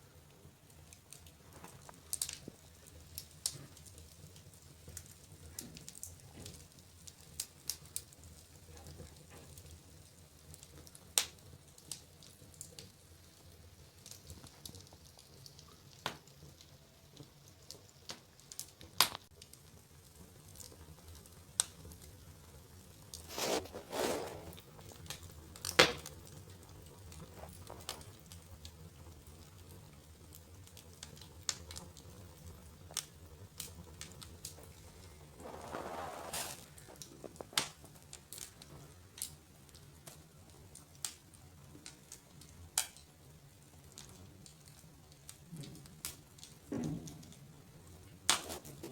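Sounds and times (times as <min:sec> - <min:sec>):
wood fire crackling: 0:00.0 - 0:48.9
fire popping: 0:00.3 - 0:48.9.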